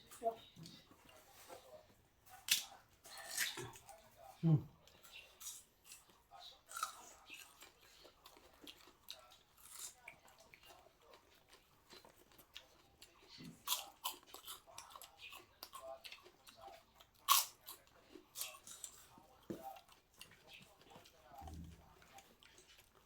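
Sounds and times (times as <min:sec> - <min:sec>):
person chewing crunchy food: 0:04.8 - 0:23.0.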